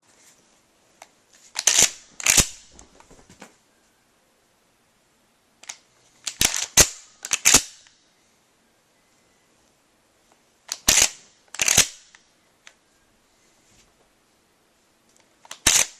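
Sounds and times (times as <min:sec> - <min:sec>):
shotgun being racked: 0:01.6 - 0:02.7, 0:05.6 - 0:07.8, 0:10.7 - 0:12.0, 0:15.5 - 0:15.9.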